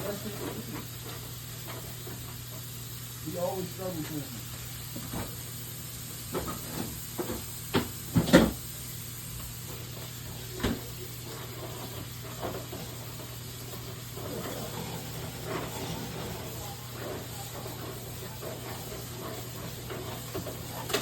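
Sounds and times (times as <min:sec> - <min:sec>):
kitchen knocks and clatters: 0:06.3 - 0:08.6, 0:13.8 - 0:21.0.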